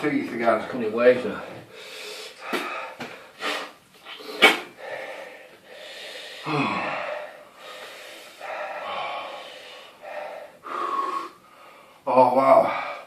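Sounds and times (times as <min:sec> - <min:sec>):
man breathing heavily: 0:01.6 - 0:13.0
man gasping: 0:01.7 - 0:12.0.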